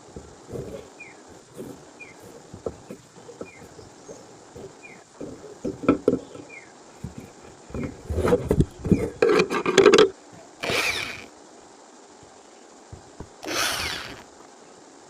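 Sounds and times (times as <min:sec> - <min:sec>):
scraping and rubbing: 0:00.0 - 0:11.3
knocks of hand work: 0:00.2 - 0:10.1.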